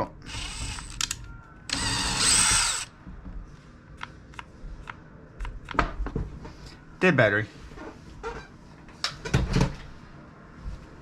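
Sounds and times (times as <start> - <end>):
battery drill boring: 0.3 - 1.1, 1.7 - 2.9.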